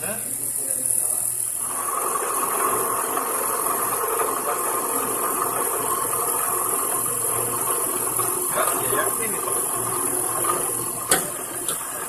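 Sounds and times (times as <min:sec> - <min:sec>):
lathe machining noise: 0:00.0 - 0:12.0
low motor hum: 0:00.0 - 0:12.0.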